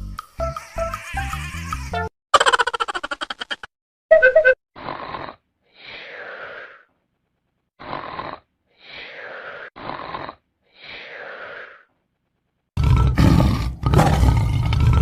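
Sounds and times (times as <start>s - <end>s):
person snoring: 4.8s - 6.9s, 7.8s - 11.9s.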